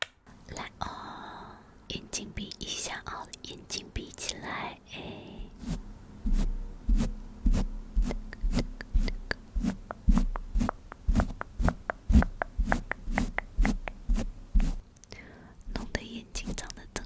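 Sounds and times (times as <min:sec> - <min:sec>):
soft tapping on skin: 0:05.6 - 0:14.8, 0:15.6 - 0:17.0.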